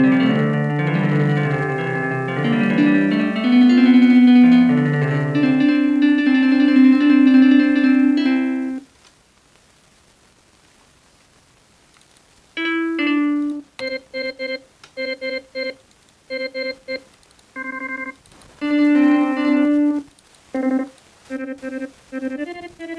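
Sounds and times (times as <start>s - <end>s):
keyboard instrument notes: 0.0s - 8.8s, 12.6s - 13.7s, 18.6s - 22.9s.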